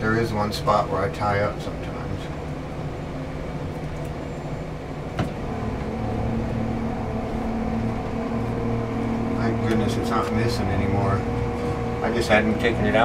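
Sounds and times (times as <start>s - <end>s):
outboard motor running: 5.2s - 13.0s.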